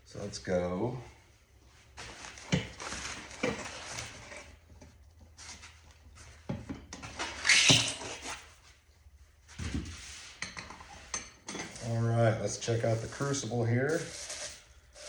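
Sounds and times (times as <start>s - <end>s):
packaging rustling and scraping: 2.0s - 4.6s.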